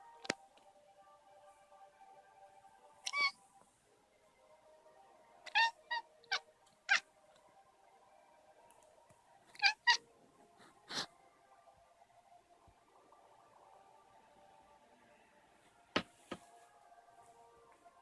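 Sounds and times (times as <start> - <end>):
cat meowing: 3.1 - 3.3, 5.5 - 7.0, 9.5 - 10.0.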